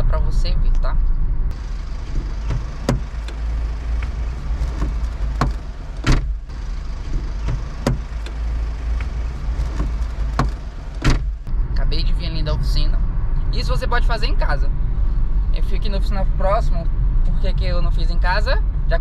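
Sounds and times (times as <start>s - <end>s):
low rumble: 0.5s - 17.3s
car door check strap clicking: 1.6s - 11.5s.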